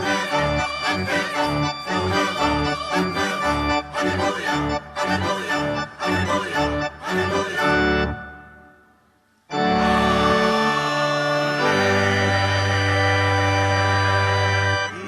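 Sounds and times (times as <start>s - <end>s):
organ playing hymn chords: 0.0s - 8.9s, 9.5s - 15.0s.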